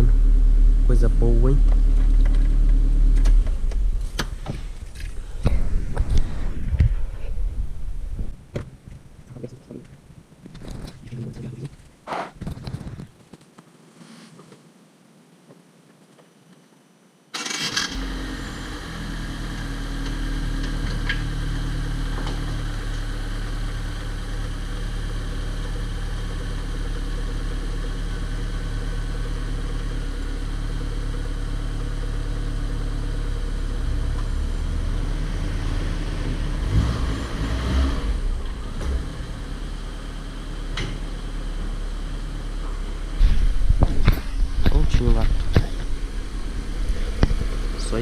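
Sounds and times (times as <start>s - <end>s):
car engine idling: 0.0s - 9.8s, 17.5s - 37.4s, 38.0s - 48.0s
engine knocks: 1.6s - 7.0s, 42.6s - 48.0s.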